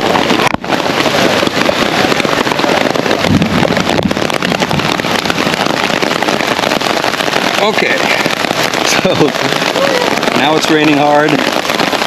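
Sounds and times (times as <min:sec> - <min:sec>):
heavy rain: 0:00.0 - 0:12.0
wind noise: 0:00.0 - 0:12.0.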